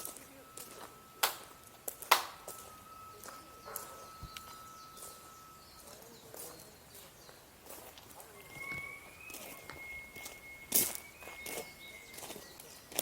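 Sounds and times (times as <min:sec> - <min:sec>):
handling noises: 0:00.0 - 0:07.2
faint steady high tone: 0:00.0 - 0:13.0.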